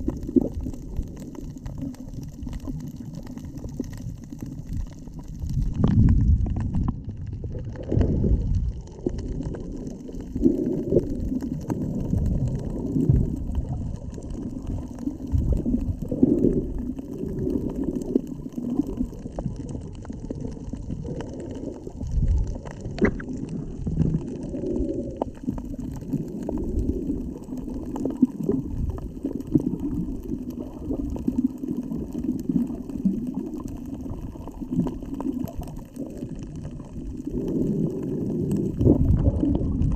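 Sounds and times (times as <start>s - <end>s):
low rumbling thumps: 5.6s - 8.6s.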